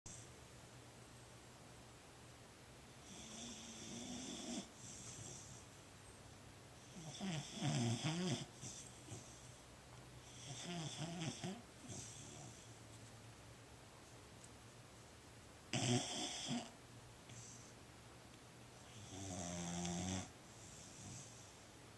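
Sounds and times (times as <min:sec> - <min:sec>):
dog snoring: 0:03.0 - 0:05.6, 0:06.8 - 0:09.6, 0:10.2 - 0:12.8, 0:15.7 - 0:17.7, 0:18.9 - 0:21.6.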